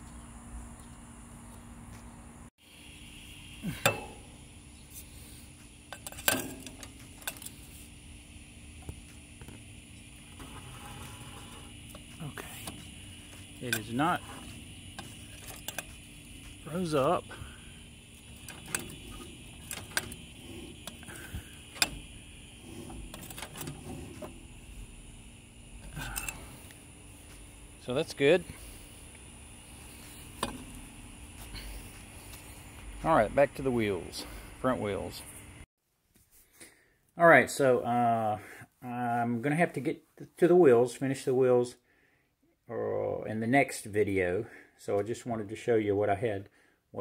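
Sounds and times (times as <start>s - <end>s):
faint steady hum: 0.0s - 35.7s
metallic clicks and clunks from engine: 5.9s - 7.5s, 11.9s - 16.0s, 18.4s - 24.4s, 30.4s - 30.8s
metal tools clinking and clanking: 5.9s - 7.6s, 25.8s - 26.5s.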